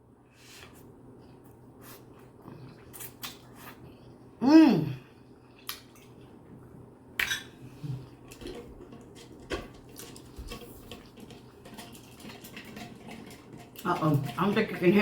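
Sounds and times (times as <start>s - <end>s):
chewing food: 8.0s - 14.9s
utensils clinking against dish: 8.3s - 15.0s.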